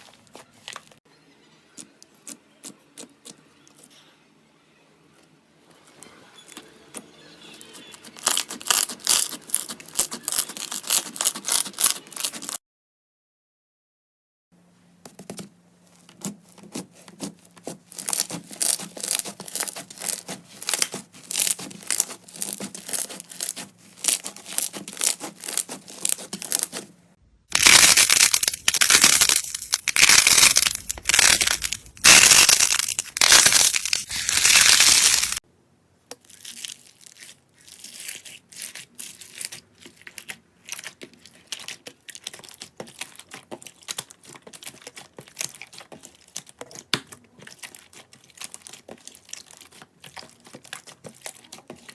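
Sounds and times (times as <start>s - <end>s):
slime crackling and popping: 8.0s - 12.6s, 17.2s - 26.8s, 27.5s - 35.4s, 36.2s - 51.9s.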